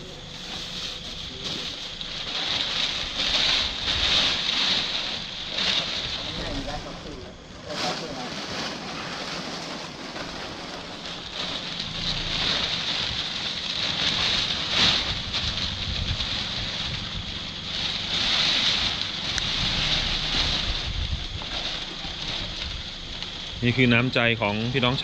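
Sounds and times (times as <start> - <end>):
wind buffeting microphone: 15.0 - 17.4, 19.5 - 23.0.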